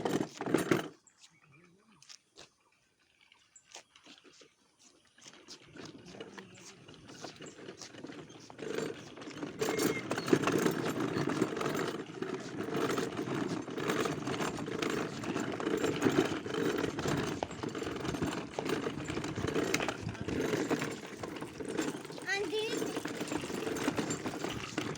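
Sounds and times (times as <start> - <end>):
toy car wheels rattling: 7.0 - 24.9.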